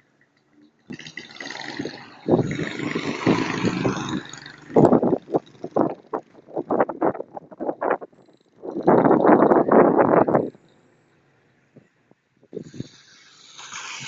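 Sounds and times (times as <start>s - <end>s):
wind gusts buffeting microphone: 1.8s - 10.6s.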